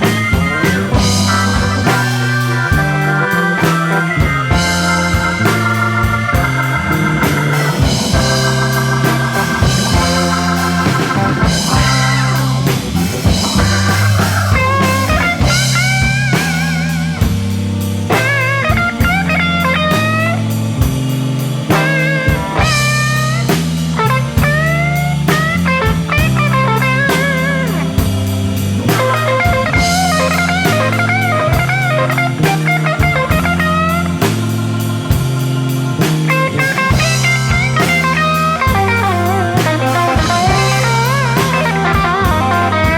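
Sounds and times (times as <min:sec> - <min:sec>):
lead guitar solo: 0:00.0 - 0:20.6, 0:21.7 - 0:42.9
drum kit: 0:00.0 - 0:42.9
organ: 0:00.0 - 0:42.9
walking bass line: 0:00.0 - 0:42.9.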